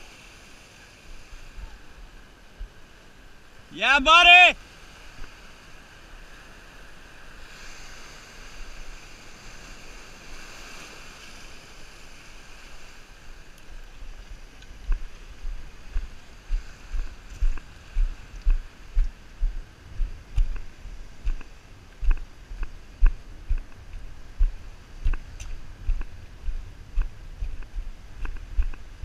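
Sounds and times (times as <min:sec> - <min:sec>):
wind: 0:00.0 - 0:29.0
regular low thumps: 0:14.9 - 0:29.0.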